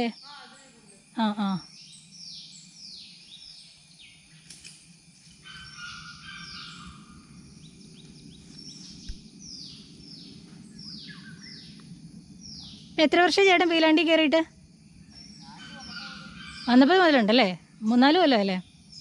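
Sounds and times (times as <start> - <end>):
birds calling high sliding notes: 15.1 - 19.0.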